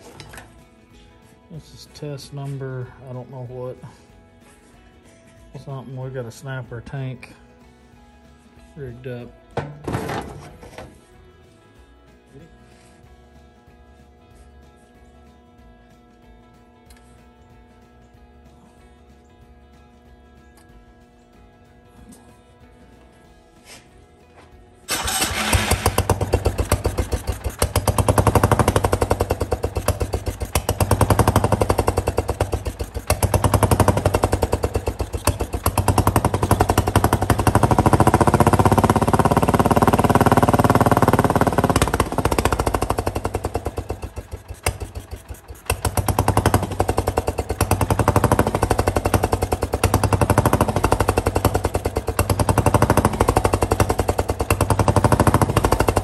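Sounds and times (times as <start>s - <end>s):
small engine running: 24.9s - 56.0s.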